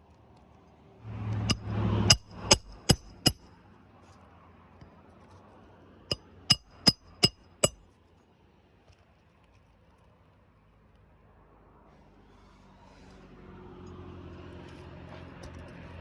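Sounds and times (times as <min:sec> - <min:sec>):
hammer striking roofing nails: 0:01.5 - 0:03.4, 0:06.5 - 0:07.8.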